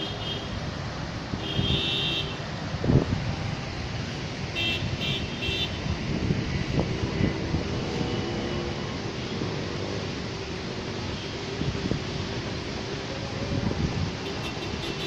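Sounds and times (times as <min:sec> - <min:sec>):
road noise: 0:00.0 - 0:15.0
vehicle horn honking: 0:01.4 - 0:02.4.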